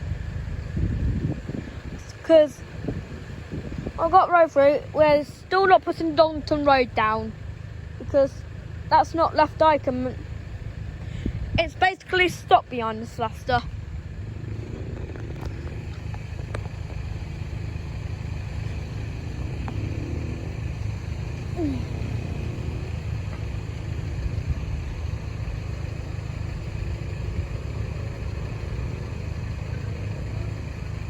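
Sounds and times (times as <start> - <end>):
low rumble: 12.8 - 31.0.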